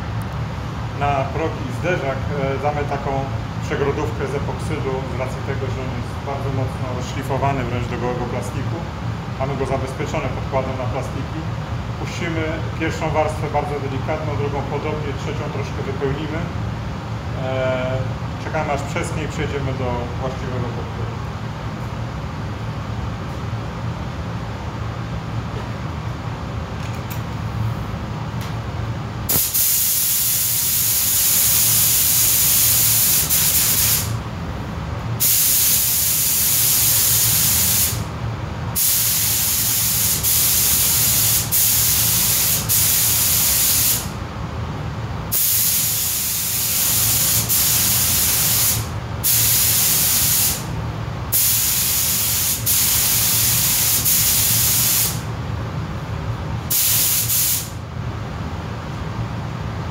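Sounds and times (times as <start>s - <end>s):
steady low hum: 0.0s - 59.9s
spray gun hissing: 29.3s - 34.2s, 35.2s - 38.0s, 38.8s - 44.1s, 45.3s - 50.7s, 51.3s - 55.2s, 56.7s - 57.8s.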